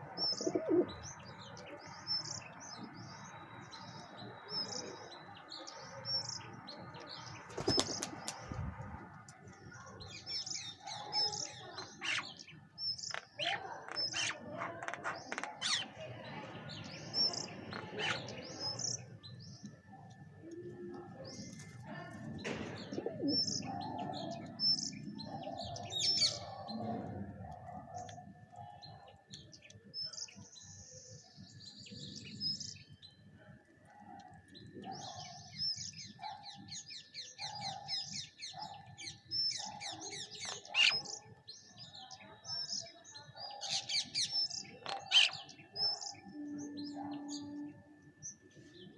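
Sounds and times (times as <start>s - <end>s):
pigeons cooing: 0.0s - 1.4s, 7.3s - 9.1s, 22.8s - 24.6s
birds chirping: 0.0s - 48.9s
wings flapping: 7.5s - 8.6s.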